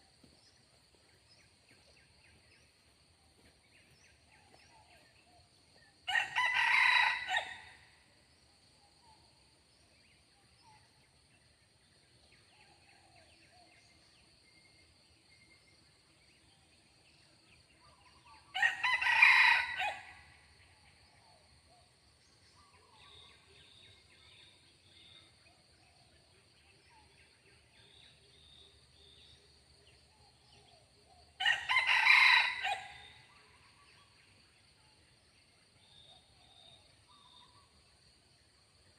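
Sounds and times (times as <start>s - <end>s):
rooster crowing: 6.1s - 7.8s, 18.6s - 20.2s, 31.4s - 33.1s.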